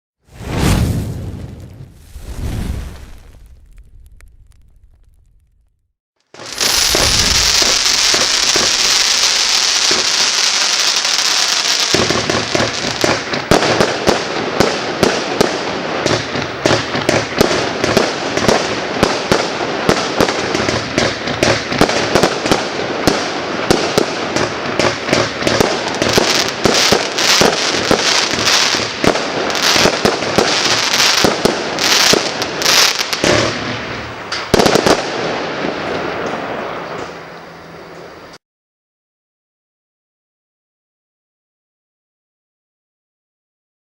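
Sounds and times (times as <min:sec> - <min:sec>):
firework hissing: 0:00.3 - 0:05.4, 0:06.4 - 0:13.3
firework crackling pops and bangs: 0:00.3 - 0:37.3.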